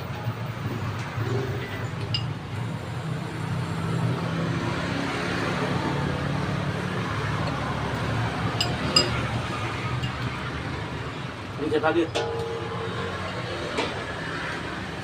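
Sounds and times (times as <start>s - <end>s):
vehicle passing: 2.8s - 11.8s.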